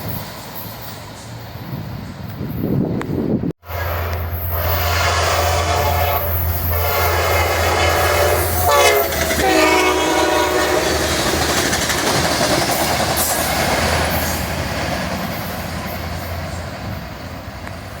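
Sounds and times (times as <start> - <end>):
train rolling past: 0.0 - 18.0
train horn: 3.6 - 11.1.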